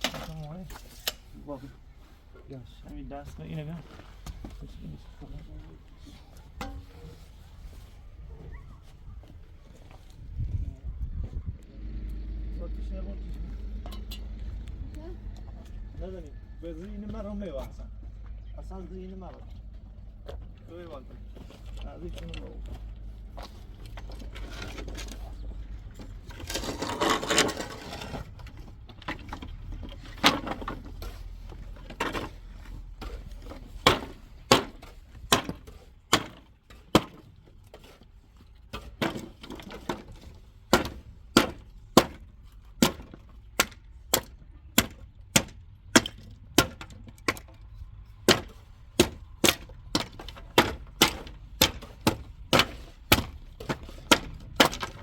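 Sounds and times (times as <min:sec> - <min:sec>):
rattling scrape: 0:23.4 - 0:34.2.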